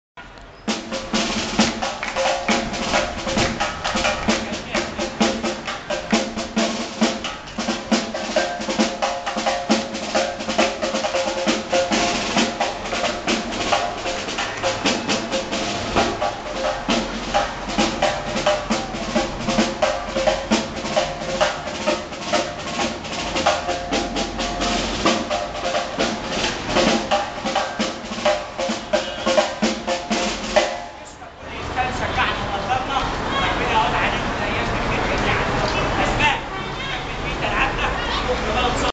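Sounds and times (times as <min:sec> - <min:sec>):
hand drum beaten fast: 0:00.8 - 0:30.9.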